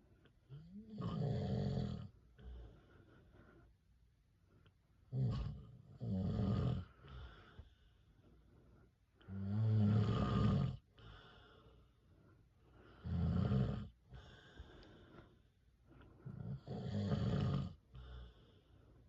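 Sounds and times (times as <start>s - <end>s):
quiet breathing: 0.0s - 19.0s
man snoring: 0.5s - 2.1s, 5.1s - 6.9s, 9.3s - 10.8s, 13.0s - 14.5s, 16.3s - 18.3s.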